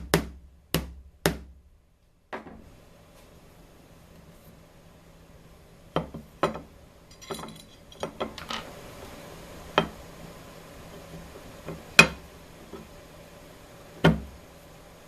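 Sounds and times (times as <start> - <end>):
steady low hum: 0.0 - 15.0
hard objects clicking and knocking: 6.0 - 8.7.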